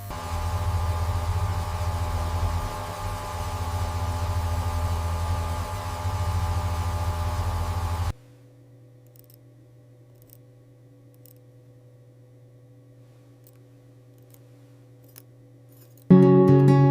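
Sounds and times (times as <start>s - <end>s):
machine humming and hissing: 0.0s - 8.2s.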